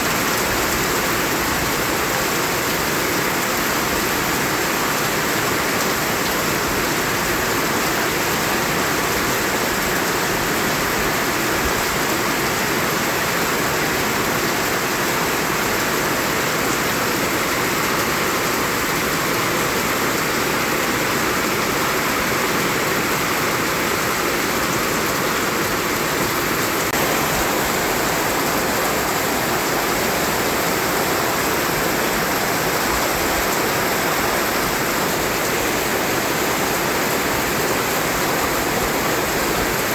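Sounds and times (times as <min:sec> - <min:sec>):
white noise hiss: 0:26.8 - 0:39.9.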